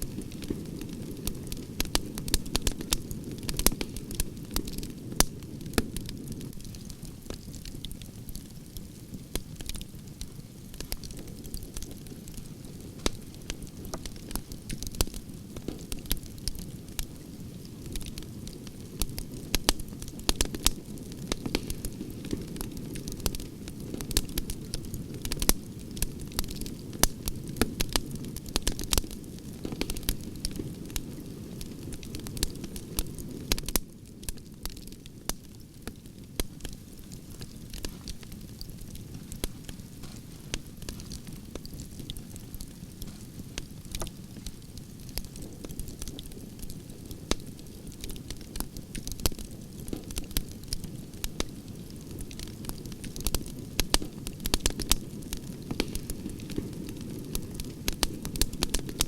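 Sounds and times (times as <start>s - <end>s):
campfire crackling: 0.0s - 59.0s
sharp fire pops: 10.7s - 17.3s, 19.0s - 59.0s.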